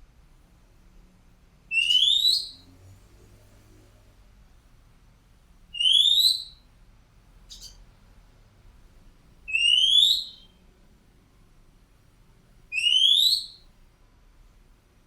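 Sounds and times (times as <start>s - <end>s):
bird whistled call: 1.7s - 2.6s, 5.8s - 6.6s, 9.5s - 10.6s, 12.7s - 13.6s.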